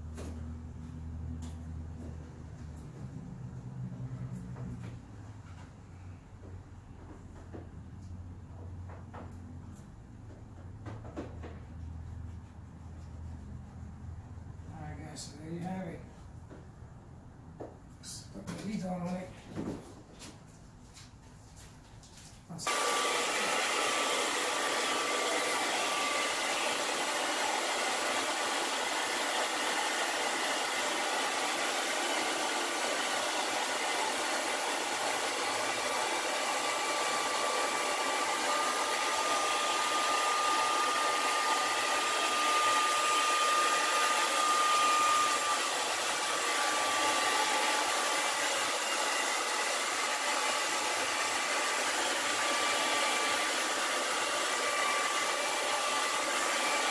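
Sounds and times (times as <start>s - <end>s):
heat gun blowing with whine: 22.7s - 56.9s.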